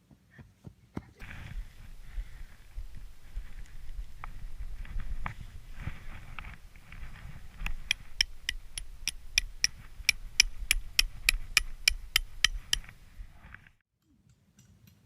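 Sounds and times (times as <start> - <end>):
hammer striking metal stake: 7.6 - 13.0.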